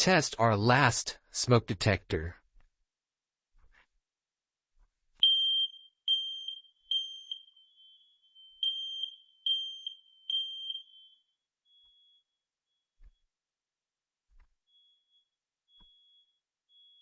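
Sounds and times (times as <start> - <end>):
smoke detector beeping: 5.2 - 12.8.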